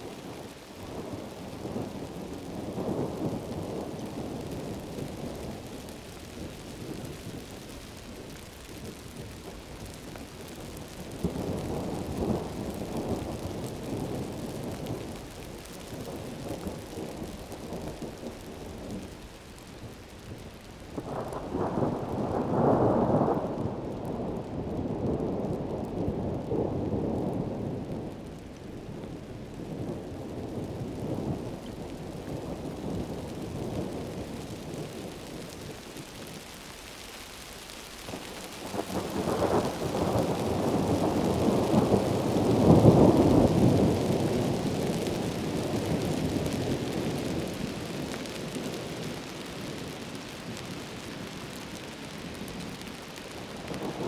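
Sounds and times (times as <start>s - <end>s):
heavy rain hissing: 28.8s - 54.0s.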